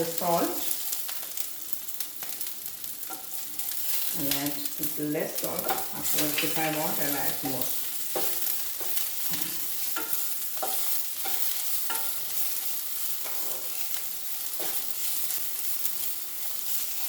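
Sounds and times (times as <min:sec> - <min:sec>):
vegetables sizzling in hot oil: 0:00.0 - 0:17.0
utensil scraping a pan: 0:05.6 - 0:15.4.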